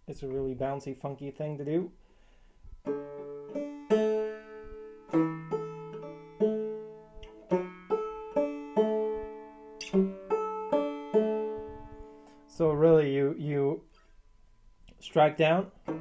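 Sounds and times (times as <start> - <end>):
banjo plucked melody: 2.8 - 14.0, 15.2 - 16.0.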